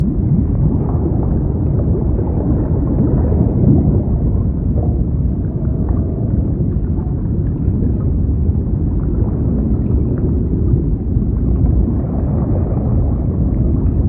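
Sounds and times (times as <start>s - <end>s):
muffled underwater rumble: 0.0s - 14.0s.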